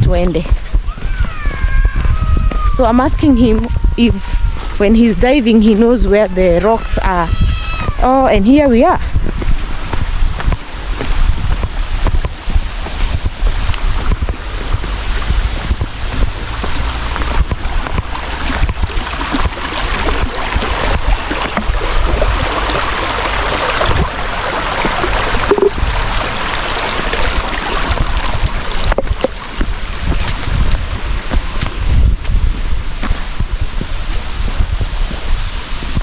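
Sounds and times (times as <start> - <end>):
wind buffeting microphone: 0.0 - 36.0
waterfall rushing and splashing: 9.1 - 36.0.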